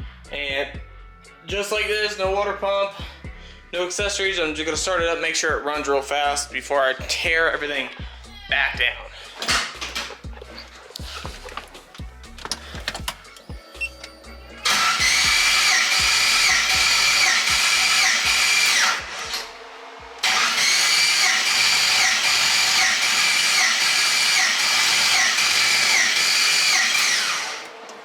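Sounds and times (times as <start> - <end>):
starter motor cranking: 9.4 - 19.6, 20.2 - 28.0.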